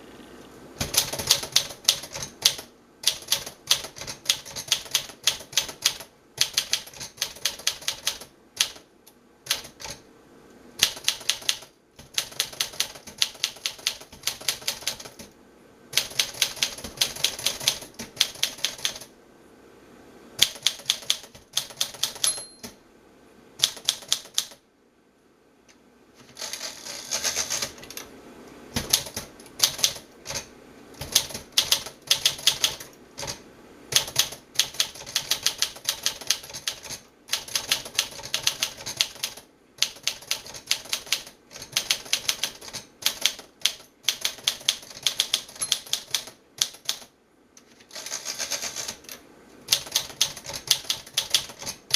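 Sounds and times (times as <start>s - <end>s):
manual typewriter typing: 0.8s - 10.0s, 10.8s - 15.3s, 15.9s - 19.1s, 20.4s - 22.8s, 23.6s - 24.6s, 26.2s - 28.1s, 28.8s - 47.1s, 47.8s - 51.9s.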